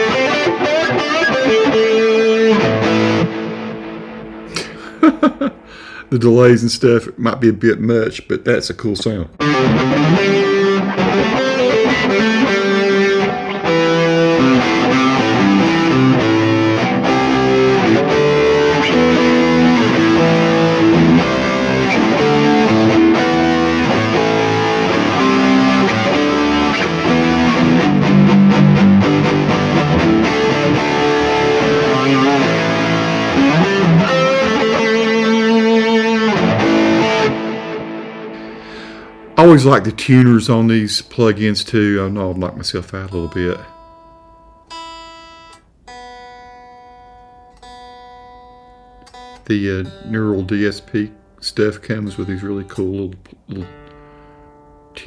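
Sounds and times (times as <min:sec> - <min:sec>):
distorted electric guitar lead: 0:00.0 - 0:06.0, 0:09.4 - 0:39.9.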